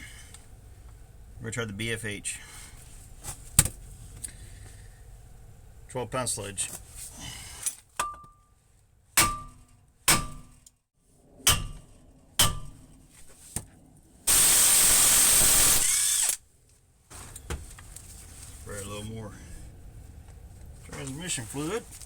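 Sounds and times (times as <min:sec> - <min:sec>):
sledgehammer clanging on metal: 0:09.2 - 0:10.6, 0:11.5 - 0:12.9
loud steady hiss: 0:14.3 - 0:16.4.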